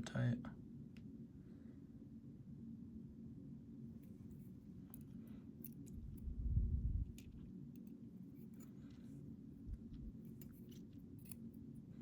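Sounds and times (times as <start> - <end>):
small metal lock parts clicking: 4.9 - 6.3, 7.1 - 9.0, 10.1 - 11.8.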